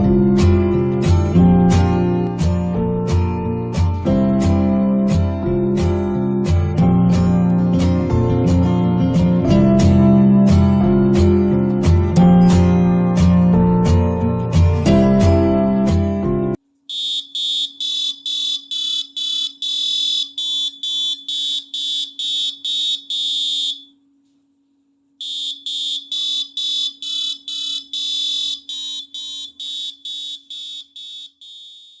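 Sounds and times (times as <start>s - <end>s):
electronic ringtone beeps: 16.9s - 23.9s, 25.2s - 32.0s.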